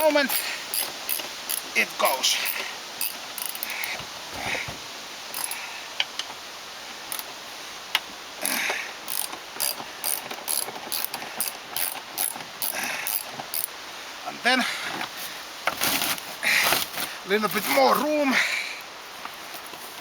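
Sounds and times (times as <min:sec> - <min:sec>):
ratchet wrench clicking: 0:00.0 - 0:01.8, 0:02.4 - 0:04.0, 0:05.3 - 0:05.6, 0:08.4 - 0:13.7.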